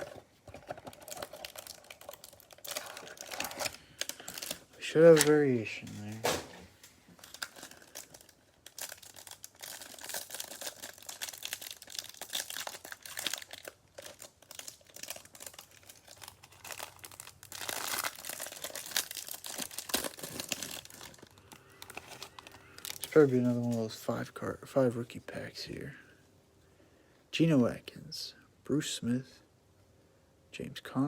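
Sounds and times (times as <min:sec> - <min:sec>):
plastic packaging crinkling and tearing: 0:00.0 - 0:24.3.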